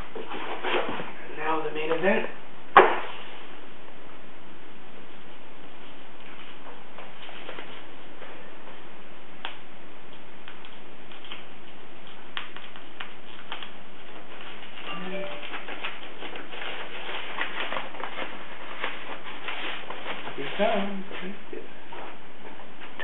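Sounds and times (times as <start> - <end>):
wrapping crackling and rustling: 10.1 - 23.0
brief pitched sound: 14.9 - 15.7.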